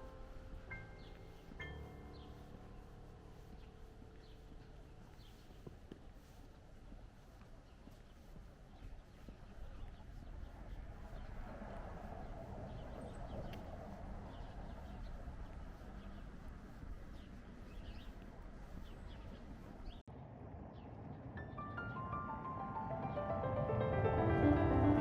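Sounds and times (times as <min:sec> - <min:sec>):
background hiss: 0:00.0 - 0:12.5
small birds chirping: 0:00.0 - 0:20.1.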